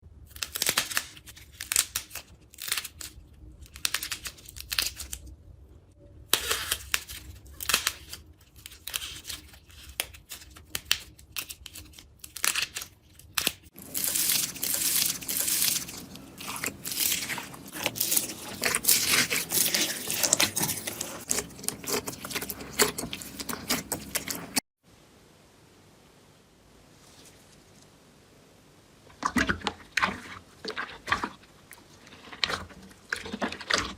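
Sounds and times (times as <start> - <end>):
slime crackling and popping: 6.3 - 24.6.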